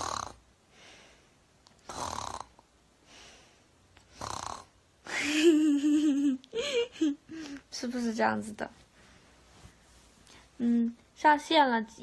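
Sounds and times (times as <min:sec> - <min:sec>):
woman imitating snoring: 0:00.0 - 0:00.4, 0:01.8 - 0:02.6, 0:04.1 - 0:05.2
soft breaths: 0:00.0 - 0:05.6, 0:06.5 - 0:11.2.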